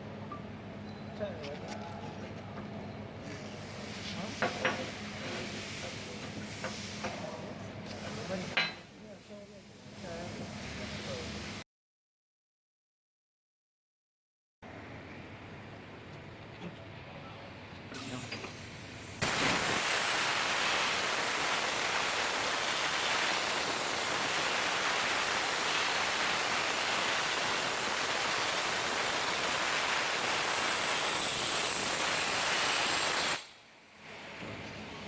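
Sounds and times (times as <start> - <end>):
plasma cutter hissing: 3.6 - 11.4, 18.0 - 33.6.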